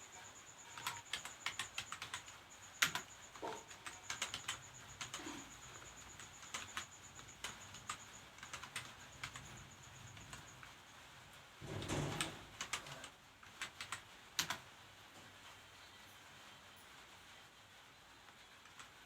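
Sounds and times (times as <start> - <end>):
keyboard typing: 0.1 - 10.8, 11.6 - 14.6.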